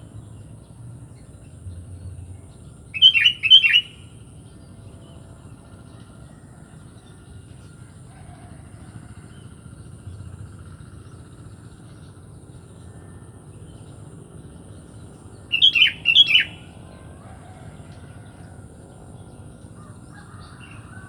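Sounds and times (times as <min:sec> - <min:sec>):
low steady rumble: 0:00.0 - 0:21.0
bulbul calling: 0:02.9 - 0:04.1, 0:15.5 - 0:16.8.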